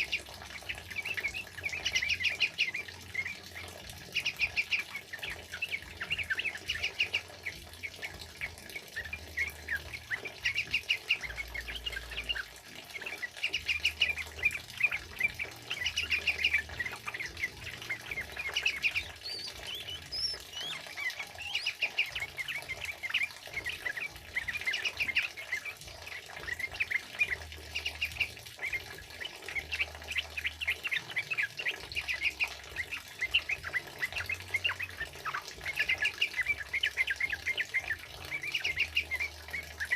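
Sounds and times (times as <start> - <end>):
birds singing: 0.0 - 39.9.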